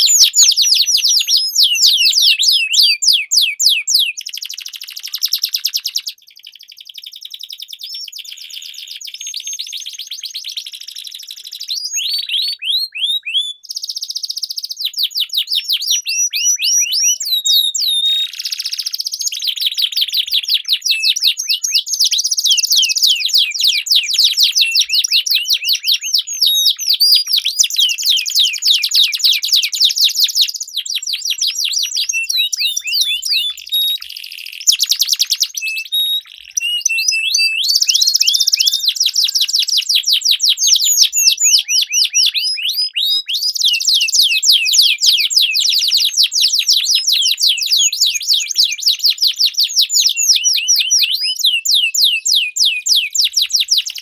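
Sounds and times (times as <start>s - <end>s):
canary trilling song: 0.0s - 54.0s.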